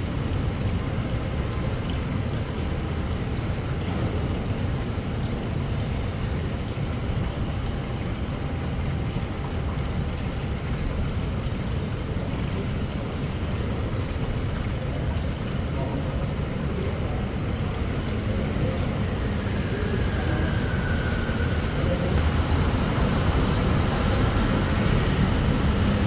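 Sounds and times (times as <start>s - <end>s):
wind buffeting microphone: 17.5s - 26.0s.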